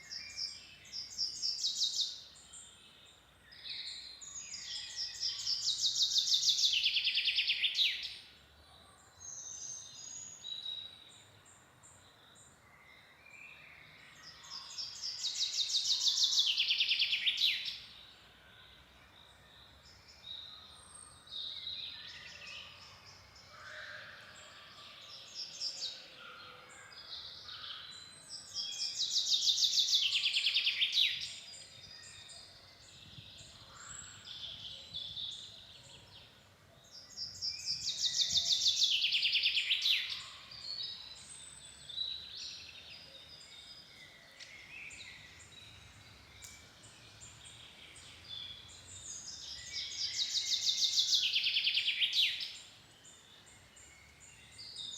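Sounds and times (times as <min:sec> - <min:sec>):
songbirds singing: 0:00.0 - 0:54.9.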